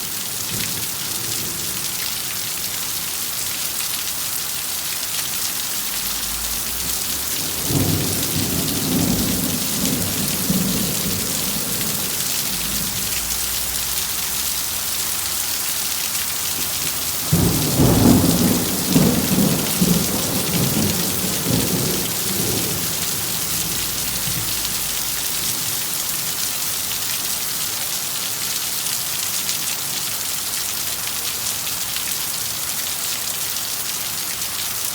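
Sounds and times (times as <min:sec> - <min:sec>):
heavy rain hissing: 0:00.0 - 0:29.3
thunder rumbling: 0:05.8 - 0:14.4, 0:16.6 - 0:25.8.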